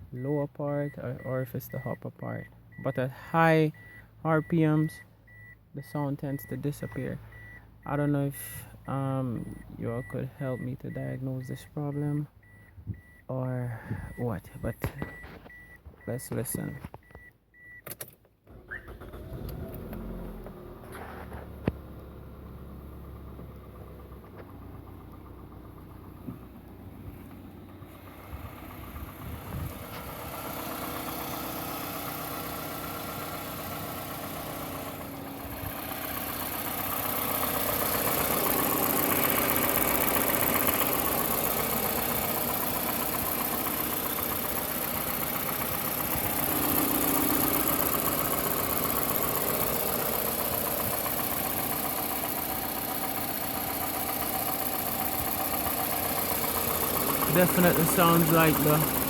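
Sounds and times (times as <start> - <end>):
engine idling with knocking: 20.9 - 59.0.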